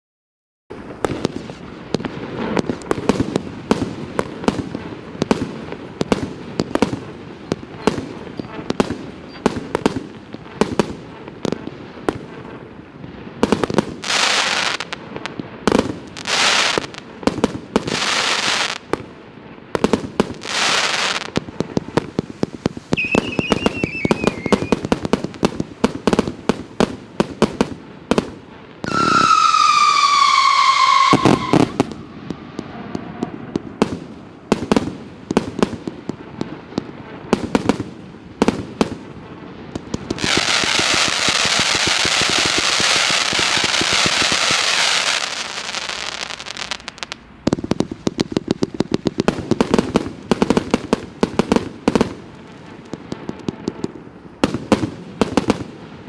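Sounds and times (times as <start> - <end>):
firework cake shots and bangs: 0.7 - 12.5, 19.8 - 39.2, 39.8 - 52.2
hissing firework bursts: 0.7 - 56.0
whistling firework shot: 5.2 - 10.3, 22.9 - 25.2, 28.8 - 34.8.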